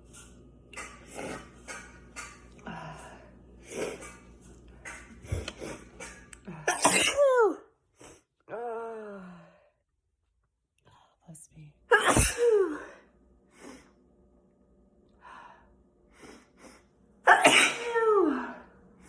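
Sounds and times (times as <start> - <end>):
person sneezing: 6.5 - 7.5, 11.9 - 12.9, 17.3 - 18.5.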